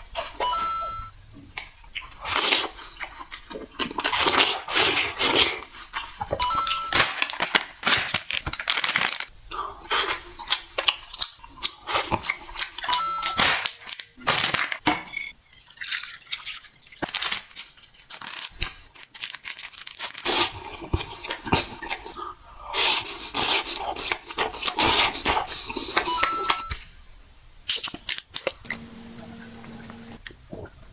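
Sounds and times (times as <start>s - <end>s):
short beep: 0.4s - 1.1s, 6.4s - 7.0s, 26.1s - 26.7s
crunching and chewing: 1.6s - 14.9s, 15.5s - 26.6s.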